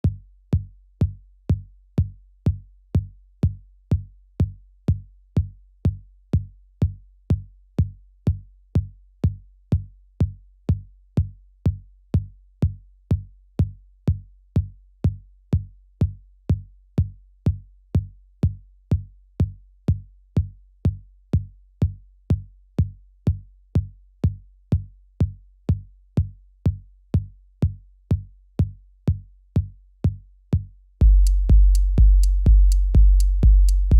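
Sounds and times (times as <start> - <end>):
electronic kick drum beating: 10.2 - 33.9
low bass hum: 31.0 - 33.9.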